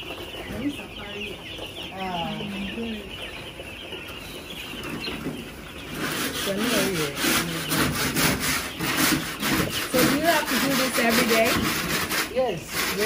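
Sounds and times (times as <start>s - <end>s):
rhythmic scraping strokes: 0.0s - 13.0s.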